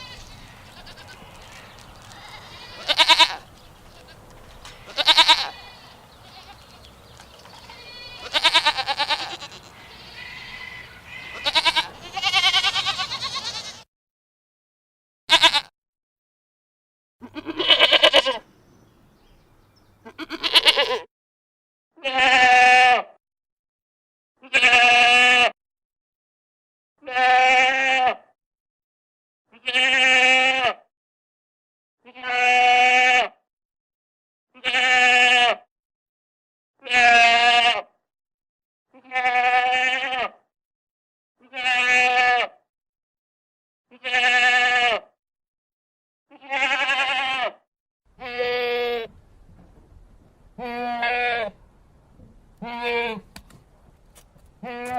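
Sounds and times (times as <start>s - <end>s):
goat bleating: 0.0s - 13.9s, 15.3s - 15.7s, 17.2s - 18.4s, 20.0s - 21.1s, 22.0s - 23.1s, 24.4s - 25.5s, 27.0s - 28.2s, 29.6s - 30.8s, 32.0s - 33.4s, 34.6s - 35.6s, 36.8s - 37.9s, 39.0s - 40.4s, 41.4s - 42.6s, 43.9s - 45.1s, 46.3s - 47.6s, 48.2s - 49.1s, 50.6s - 51.6s, 52.6s - 53.4s, 54.6s - 54.9s.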